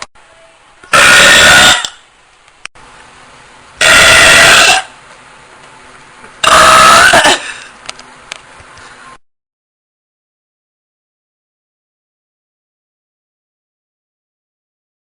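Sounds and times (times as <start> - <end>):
loud forced burps: 6.4 - 7.7.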